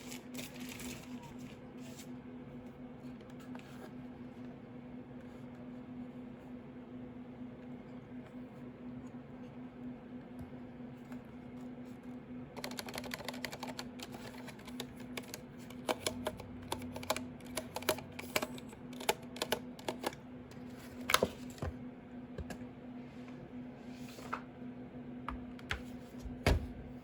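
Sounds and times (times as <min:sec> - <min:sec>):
typing on mechanical keyboard: 0:12.6 - 0:20.2.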